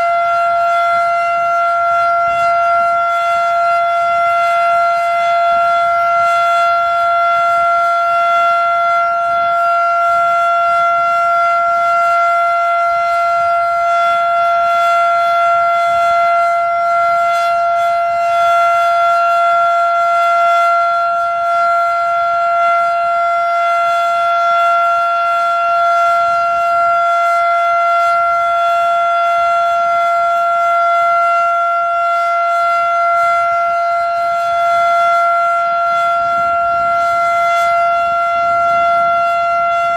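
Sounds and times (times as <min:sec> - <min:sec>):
warning siren steady tone: 0:00.0 - 0:39.9
wind noise: 0:00.0 - 0:39.9.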